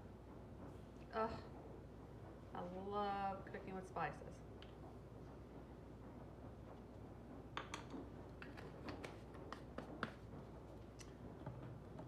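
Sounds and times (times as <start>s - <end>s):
spice containers clicking and tapping: 7.5s - 10.3s.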